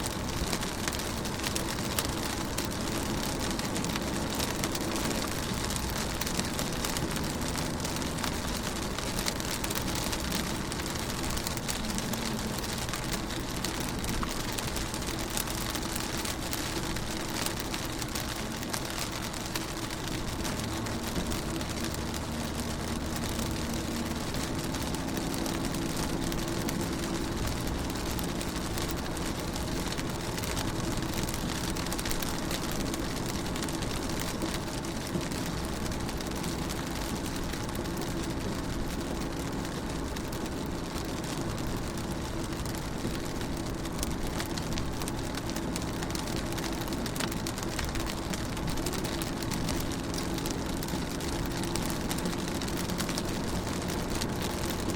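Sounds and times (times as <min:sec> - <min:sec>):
rain on a car window: 0:00.0 - 0:54.9.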